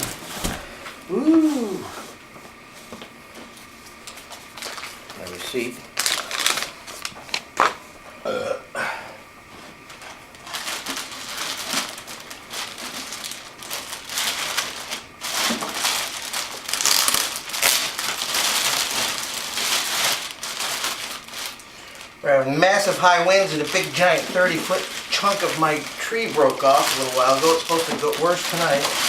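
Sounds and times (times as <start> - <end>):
plastic packaging crinkling: 4.0 - 7.8, 9.8 - 29.0.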